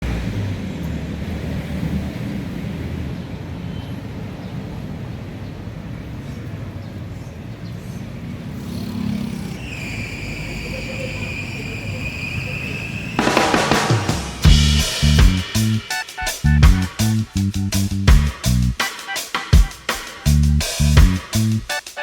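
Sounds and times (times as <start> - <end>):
vehicle engine and road noise: 0.0 - 9.9.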